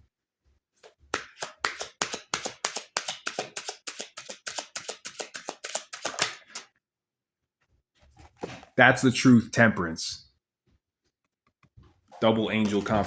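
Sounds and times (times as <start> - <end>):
cards being shuffled: 0.8 - 6.7, 12.2 - 13.0.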